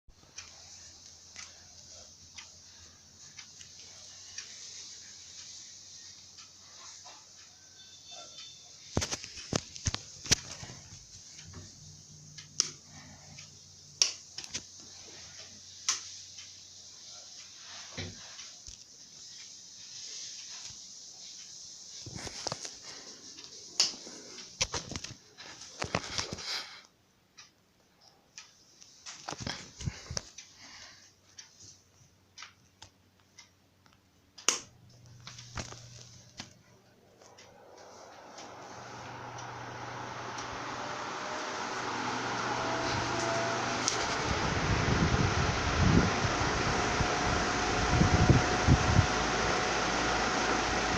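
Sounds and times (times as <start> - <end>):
ceiling fan running: 0.1 - 50.9
sharp clicks: 32.4 - 36.6
rush of air from fan blades: 37.5 - 50.9.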